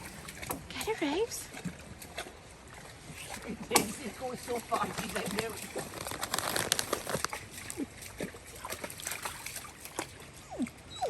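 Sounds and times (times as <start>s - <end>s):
river water splashing: 0.0s - 10.9s
dog whining: 10.4s - 11.0s.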